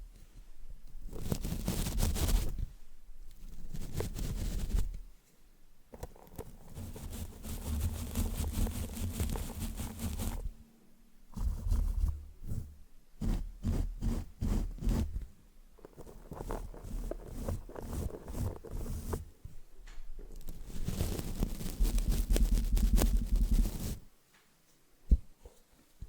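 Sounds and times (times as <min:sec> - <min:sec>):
brush bristles swishing on microphone: 0:06.8 - 0:10.5, 0:20.5 - 0:24.0.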